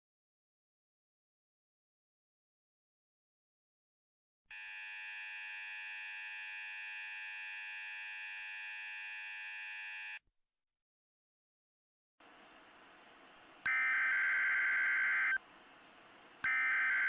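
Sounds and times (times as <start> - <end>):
harsh electronic alert buzzer: 13.7 - 15.4, 16.5 - 17.0.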